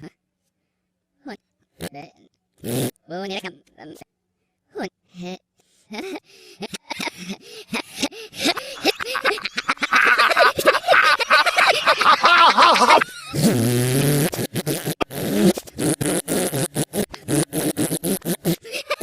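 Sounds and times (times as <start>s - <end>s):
fart sound effect: 2.6s - 3.0s, 13.3s - 18.6s.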